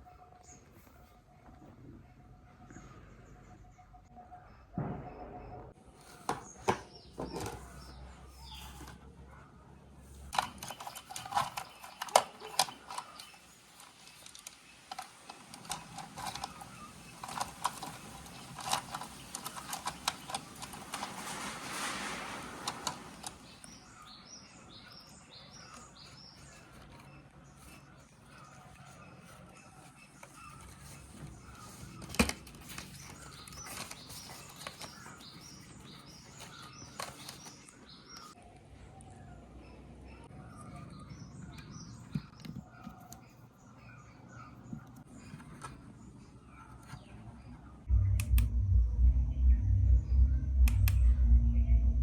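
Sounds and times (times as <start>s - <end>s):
rustling: 10.2s - 24.1s.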